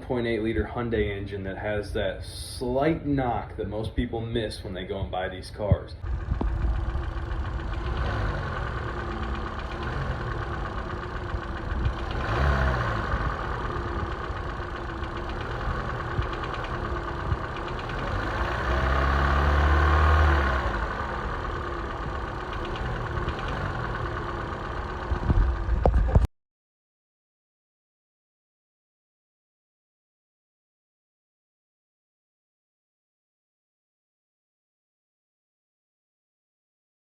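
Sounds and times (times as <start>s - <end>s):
car engine idling with knock: 5.7s - 26.3s
car engine revving: 6.0s - 26.2s.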